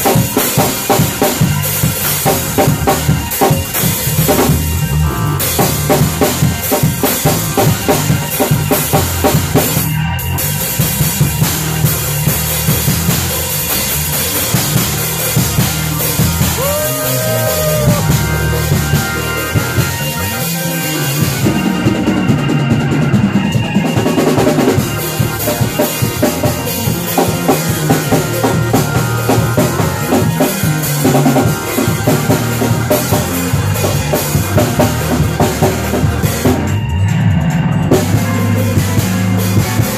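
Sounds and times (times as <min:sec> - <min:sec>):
bass: 0:00.0 - 0:39.9
drum kit groove: 0:00.0 - 0:39.9
keyboard playing: 0:00.0 - 0:39.9.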